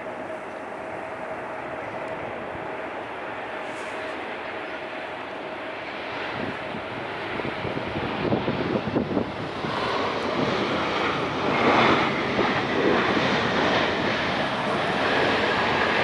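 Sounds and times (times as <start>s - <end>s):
airliner engines rumbling: 0.0s - 16.0s
jet engine whine: 0.0s - 16.0s.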